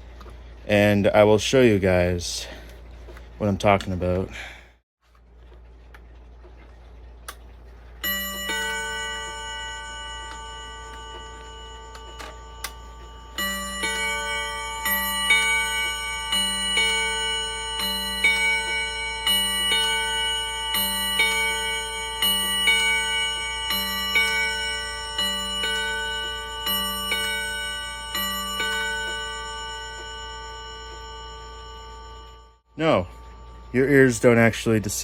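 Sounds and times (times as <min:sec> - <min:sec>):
clock chime rods ringing: 0:08.0 - 0:35.0.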